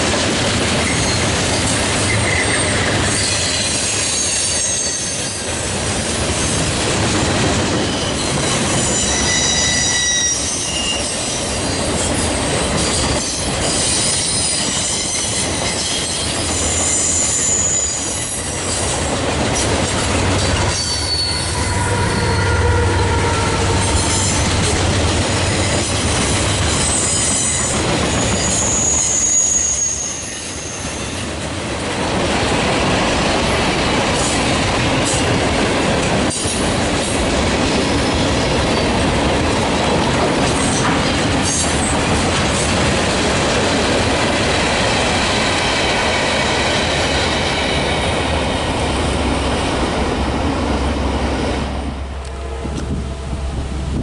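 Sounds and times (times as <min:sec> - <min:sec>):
train wheels rumbling on rails: 0:00.0 - 0:54.0
high wheel squeal: 0:00.9 - 0:05.5, 0:07.8 - 0:11.5, 0:12.8 - 0:18.9, 0:20.6 - 0:24.7, 0:26.8 - 0:31.2
train horn: 0:08.8 - 0:11.0, 0:20.7 - 0:24.7, 0:51.6 - 0:54.0.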